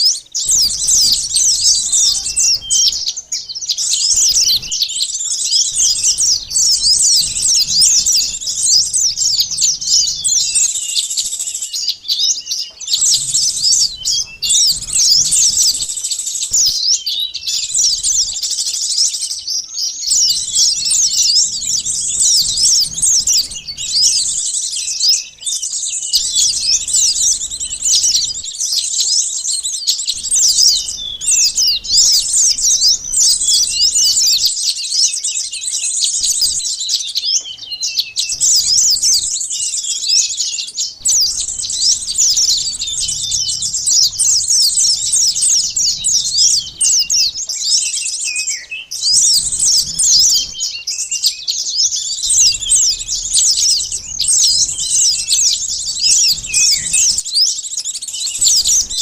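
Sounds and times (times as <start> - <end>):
songbirds chirping and twittering: 0.0 - 59.0.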